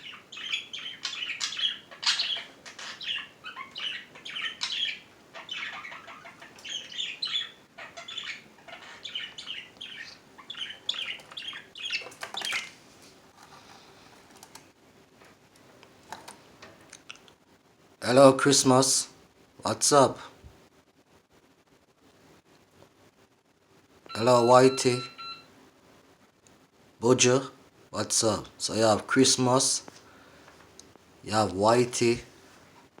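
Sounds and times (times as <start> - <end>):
budgerigars chirping and chattering: 0.0 - 12.7.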